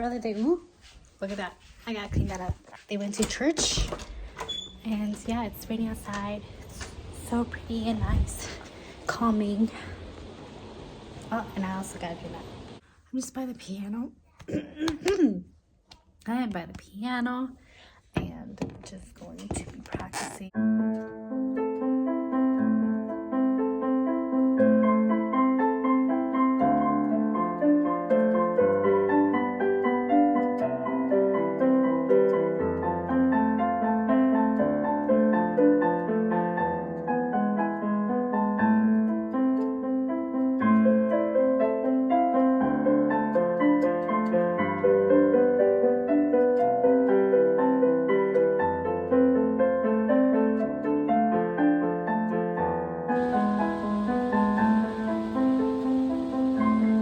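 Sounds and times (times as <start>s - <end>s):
slow calm piano piece: 20.5s - 57.0s.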